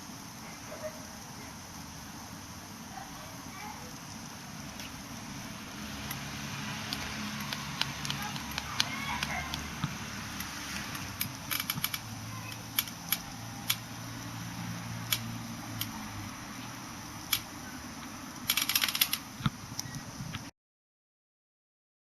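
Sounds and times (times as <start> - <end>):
steady low hum: 0.0 - 20.5
sharp clicks and ticks: 6.0 - 14.1, 15.0 - 16.3, 17.2 - 20.4.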